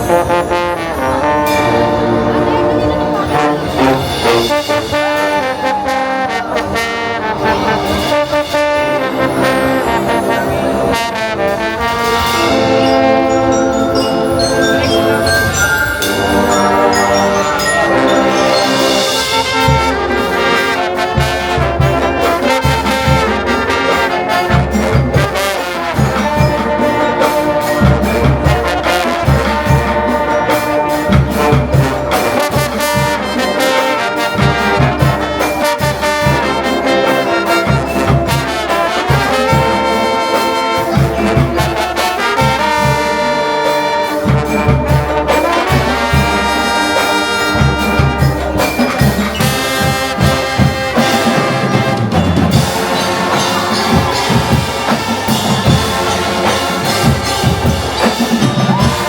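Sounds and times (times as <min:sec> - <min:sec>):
brass horns playing melody: 0:00.0 - 0:59.0
marching drums beat: 0:17.6 - 0:59.0.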